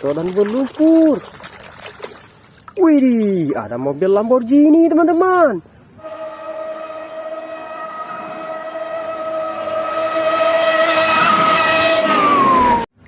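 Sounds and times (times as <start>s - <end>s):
fast car engine passing: 10.0s - 12.9s.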